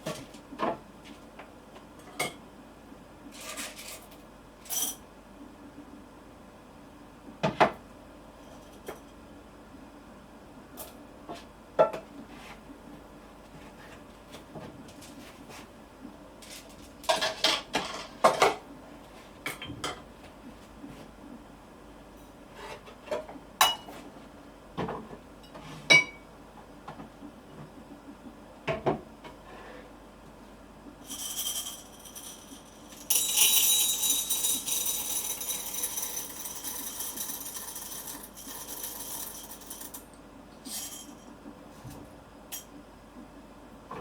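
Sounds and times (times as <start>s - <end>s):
dishes and utensils clinking: 23.2s - 24.0s, 25.4s - 26.2s.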